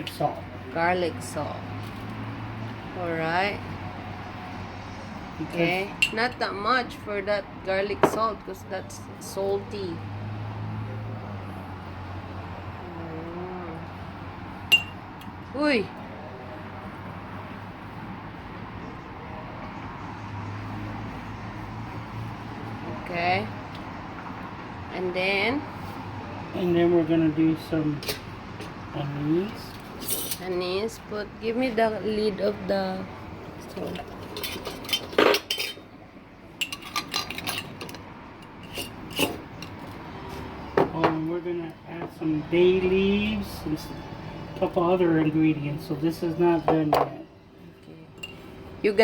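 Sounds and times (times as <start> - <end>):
kitchen utensils clinking: 14.7 - 15.0, 33.7 - 35.9, 36.6 - 39.9, 48.2 - 48.5.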